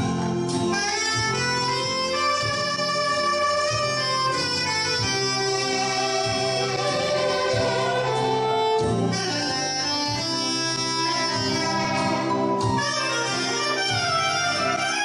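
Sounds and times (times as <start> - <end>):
reed wind instrument long notes: 0.0 - 15.0
drum strokes: 5.0 - 9.6.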